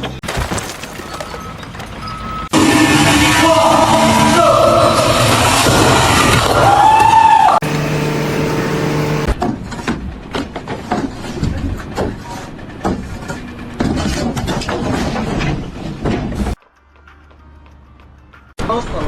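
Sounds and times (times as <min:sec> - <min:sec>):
machine engine humming: 0:07.6 - 0:09.4
knocks and clattering: 0:09.3 - 0:16.6.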